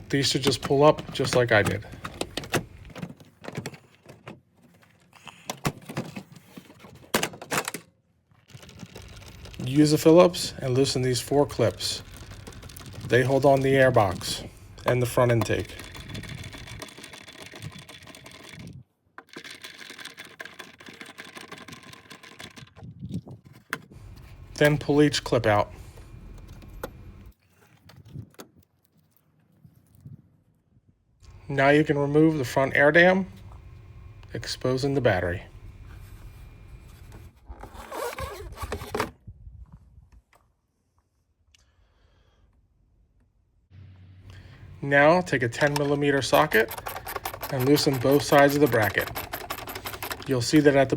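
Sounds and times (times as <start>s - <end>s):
plastic panel scraping: 0.0s - 7.6s, 35.2s - 39.2s, 45.0s - 50.9s.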